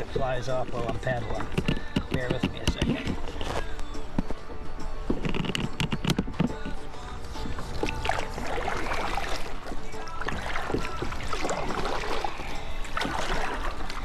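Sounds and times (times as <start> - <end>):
camera knocking on boat: 0.8 - 3.7, 5.1 - 6.8
small water splashes: 7.4 - 14.0.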